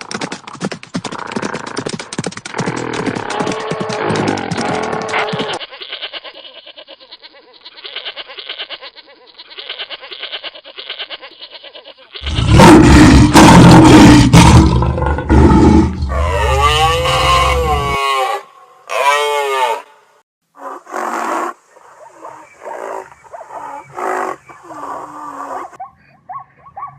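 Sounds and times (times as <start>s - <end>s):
hoofbeats of running animals: 0.0s - 5.6s
loud animal roar: 12.2s - 19.9s
swooping animal call: 16.1s - 19.9s.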